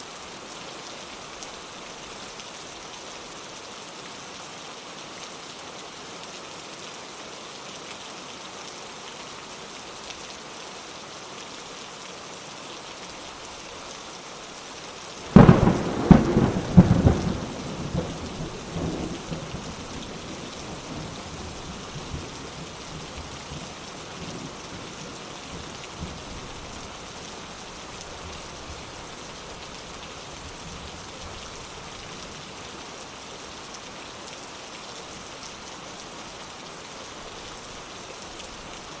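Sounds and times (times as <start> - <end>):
steady rain: 0.0 - 39.0
thunder cracking and rumbling: 15.3 - 21.1.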